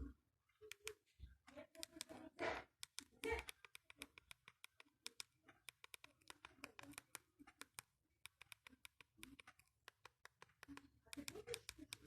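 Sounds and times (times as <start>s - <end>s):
phone keypad buttons clicking: 2.8s - 12.0s.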